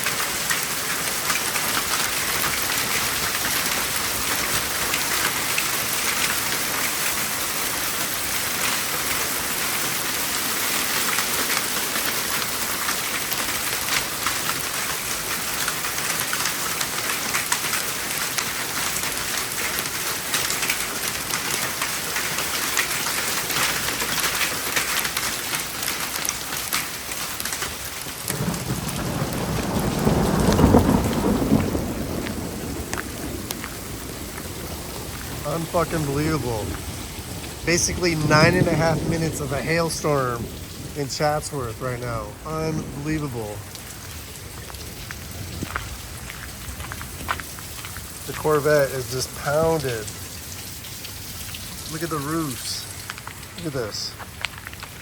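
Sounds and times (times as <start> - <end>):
hail and heavy rain pelting: 0.0 - 55.0
thunder rumbling: 28.1 - 54.2.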